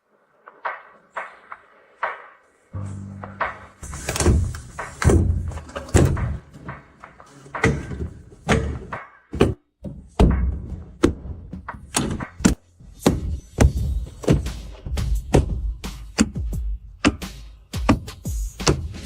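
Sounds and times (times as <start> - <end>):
sharp thuds and knocks: 7.6 - 19.0.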